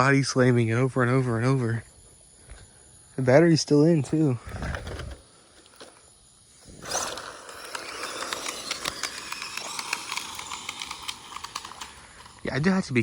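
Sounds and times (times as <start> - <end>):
toy truck wheels rattling over dirt: 4.0 - 13.0
faint electric motor whine: 4.1 - 13.0.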